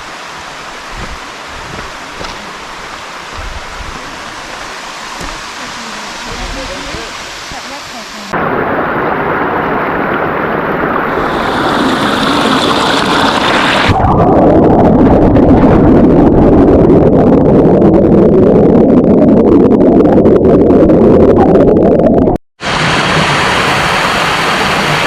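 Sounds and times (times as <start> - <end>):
waterfall roaring: 0.0 - 14.0, 22.6 - 25.0.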